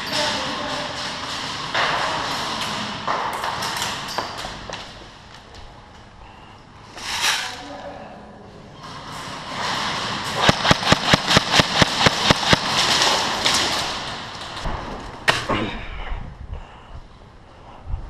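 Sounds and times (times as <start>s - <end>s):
steady rushing noise: 9.5s - 15.1s
airsoft gun shots: 10.4s - 13.7s.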